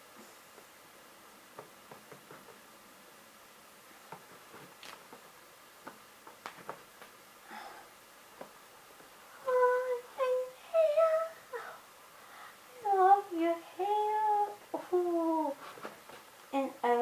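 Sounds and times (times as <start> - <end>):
handling clicks and rustles: 4.1 - 7.2.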